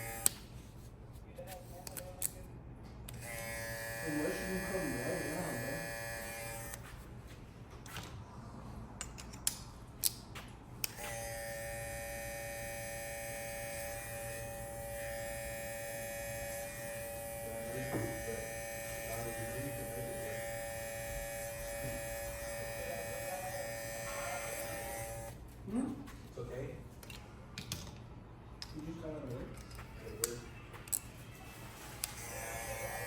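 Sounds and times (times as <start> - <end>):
hair clipper humming: 0.0 - 0.3, 3.1 - 6.8, 10.9 - 25.3, 32.0 - 33.0.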